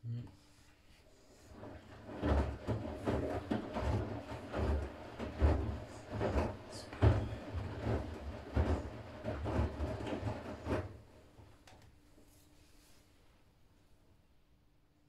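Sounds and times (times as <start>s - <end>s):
washing machine low rumble: 1.0s - 13.0s
laundry tumbling thuds and swishes: 1.4s - 11.4s.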